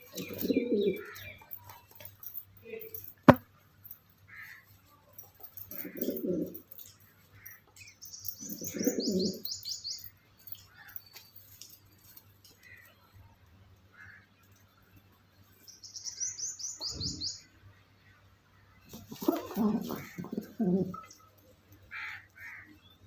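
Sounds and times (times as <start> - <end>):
pigeons cooing: 0.0 - 1.2, 5.6 - 6.8, 8.4 - 9.5, 18.9 - 21.1
small bird chirping: 0.0 - 1.7, 7.7 - 11.4, 15.6 - 17.5.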